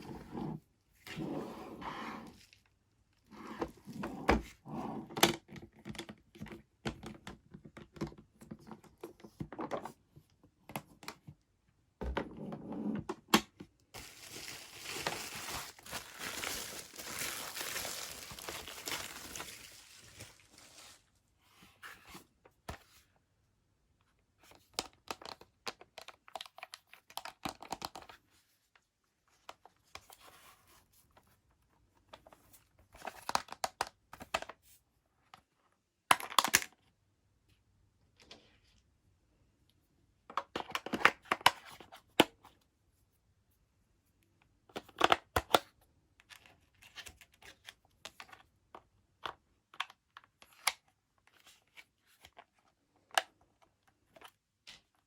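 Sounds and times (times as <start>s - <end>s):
packaging tearing and crinkling: 14.0s - 21.0s.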